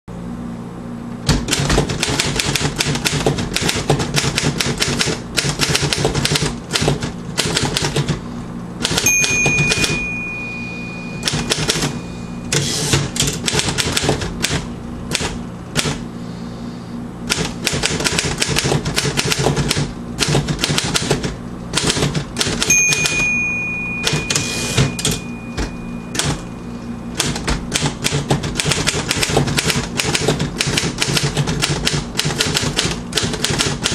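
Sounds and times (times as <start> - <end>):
manual typewriter typing: 1.3 - 8.2, 8.8 - 10.0, 11.2 - 16.0, 17.3 - 23.3, 24.0 - 25.2, 26.1 - 26.4, 27.2 - 33.9
typewriter margin bell ding: 9.0 - 12.6, 22.6 - 26.6.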